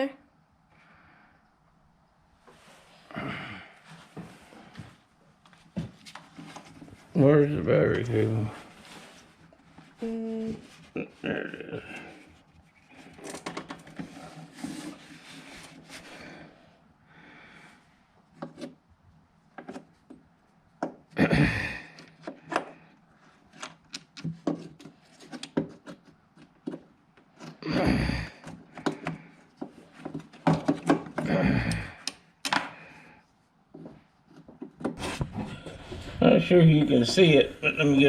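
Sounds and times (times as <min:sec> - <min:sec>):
scraping rubs: 0:11.8 - 0:16.2, 0:33.9 - 0:38.0.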